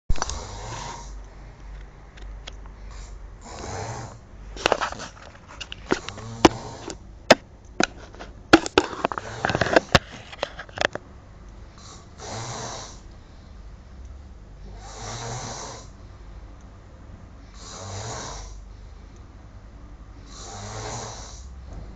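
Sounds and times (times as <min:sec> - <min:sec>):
man snoring: 0:00.3 - 0:01.2, 0:02.9 - 0:04.2, 0:06.0 - 0:07.0, 0:11.8 - 0:13.0, 0:14.7 - 0:15.9, 0:17.5 - 0:18.6, 0:20.2 - 0:21.5
sharp clicks and taps: 0:04.6 - 0:11.0.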